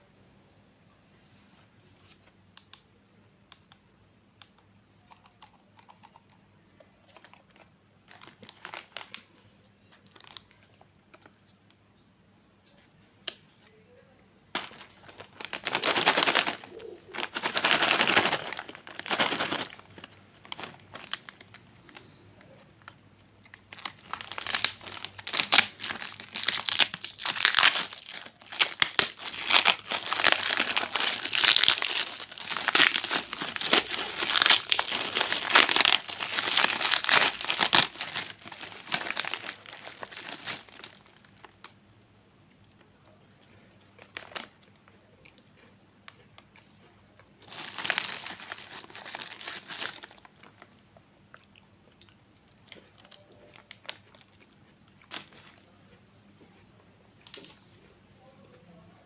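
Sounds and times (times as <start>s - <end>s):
candy wrappers crinkling: 5.1s - 11.6s, 14.5s - 41.8s, 42.6s - 55.8s.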